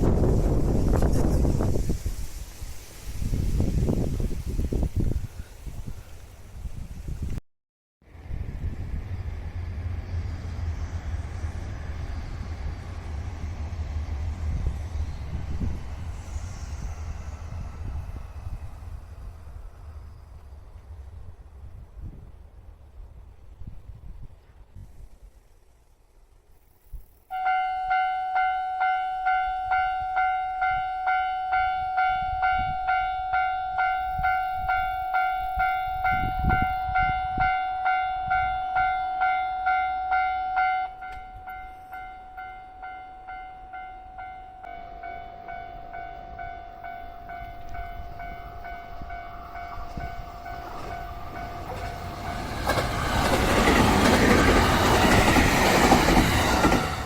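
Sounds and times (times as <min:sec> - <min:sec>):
train passing rumble: 0:00.0 - 0:07.4, 0:08.0 - 0:57.0
level crossing warning bell: 0:27.3 - 0:53.0.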